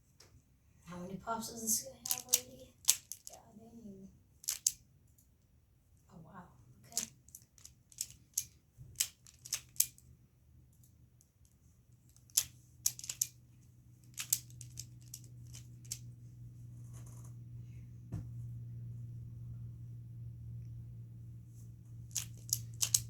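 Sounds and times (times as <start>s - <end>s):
puzzle cube layers clicking: 2.0s - 3.4s, 4.4s - 4.8s, 6.9s - 10.0s, 12.2s - 13.4s, 14.1s - 16.0s, 22.1s - 23.0s.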